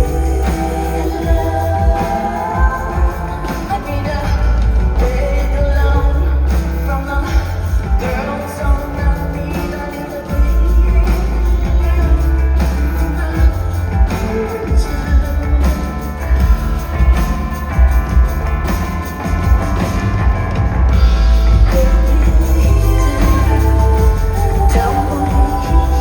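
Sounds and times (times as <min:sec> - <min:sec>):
woman singing: 0:00.0 - 0:16.3, 0:21.5 - 0:26.0
rock band playing: 0:00.0 - 0:26.0.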